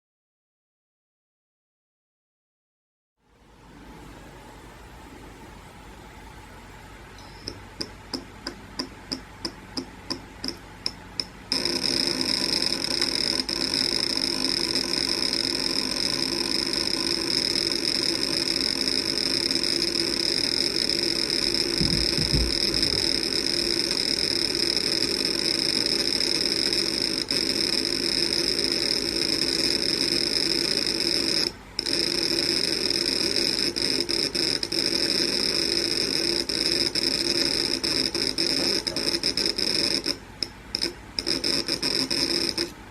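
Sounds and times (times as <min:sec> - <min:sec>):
lower hum: 0:03.2 - 0:25.9
hard drive high-pitched whine: 0:03.3 - 0:42.9
hard drive ticking: 0:07.2 - 0:42.8
low thump: 0:21.8 - 0:23.0.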